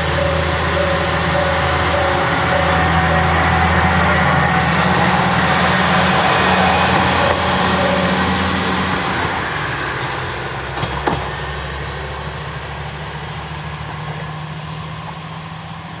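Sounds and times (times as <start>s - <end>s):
clunks: 0.0s - 15.9s
railcar diesel engine humming: 0.0s - 16.0s.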